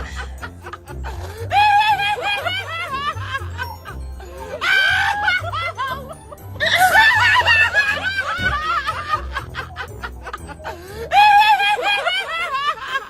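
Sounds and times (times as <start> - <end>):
people laughing and snickering: 0.0 - 13.0
music with stepping bass line: 6.2 - 11.1.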